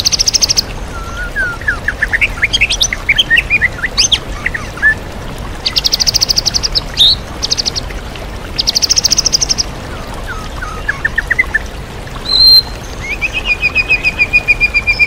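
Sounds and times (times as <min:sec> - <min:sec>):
bird chirping and trilling: 0:05.6 - 0:07.8, 0:08.6 - 0:09.7, 0:12.2 - 0:15.0.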